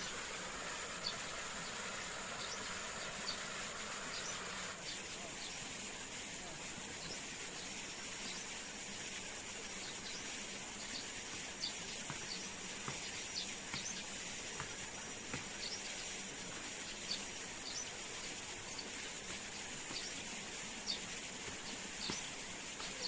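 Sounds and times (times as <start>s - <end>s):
bird chirps: 0.0s - 5.5s.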